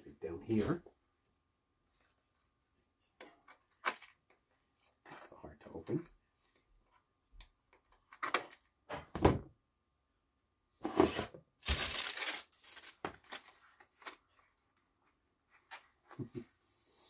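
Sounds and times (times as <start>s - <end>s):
package tearing: 11.6s - 13.4s
packaging crinkling: 11.6s - 14.2s.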